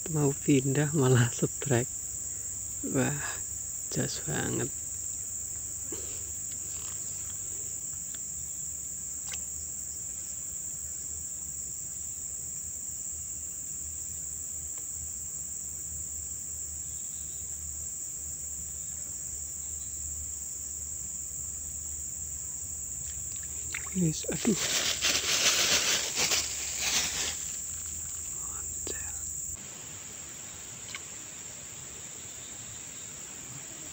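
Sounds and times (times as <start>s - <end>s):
insects trilling: 0.0s - 33.9s
faint click: 30.9s - 31.1s.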